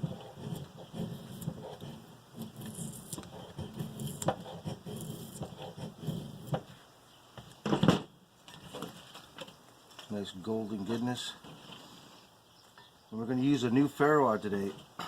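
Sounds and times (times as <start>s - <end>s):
knife scraping wood: 0.0s - 6.8s.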